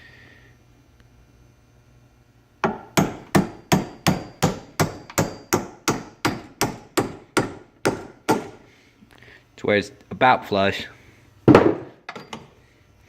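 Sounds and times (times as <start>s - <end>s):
hammer striking steel pin: 2.6s - 8.6s.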